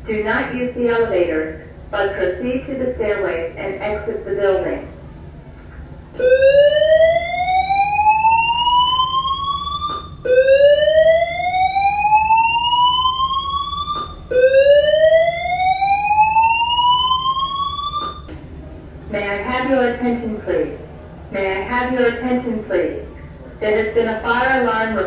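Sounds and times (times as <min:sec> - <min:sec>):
fire alarm whoop tone: 0:06.2 - 0:18.3.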